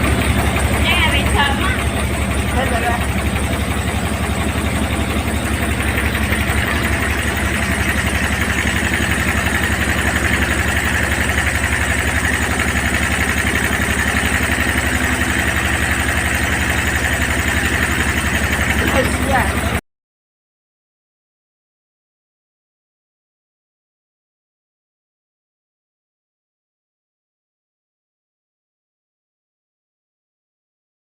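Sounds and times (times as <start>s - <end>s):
vehicle engine idling: 0.0s - 19.8s.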